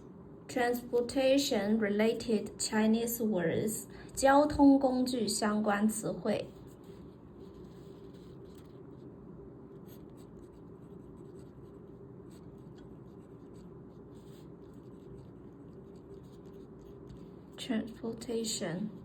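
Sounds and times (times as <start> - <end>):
low room hum: 0.0 - 19.0
pen scratching on paper: 6.4 - 9.1, 9.7 - 19.0.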